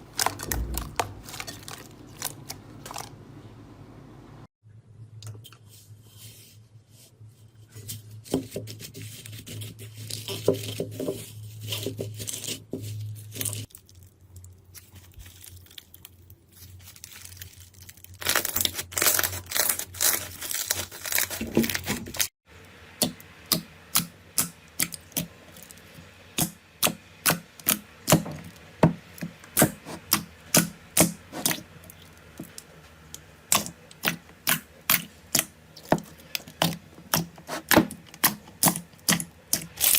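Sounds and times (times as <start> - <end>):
slime squishing: 0.0 - 3.1, 9.1 - 22.2, 23.5 - 39.9
low hum: 0.0 - 5.0.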